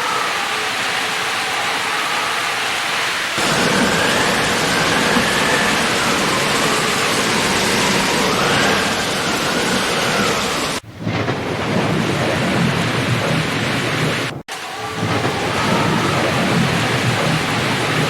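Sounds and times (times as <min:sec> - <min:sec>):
heavy rain: 0:00.0 - 0:18.0
low rumble of thunder: 0:03.4 - 0:14.4, 0:15.0 - 0:18.0.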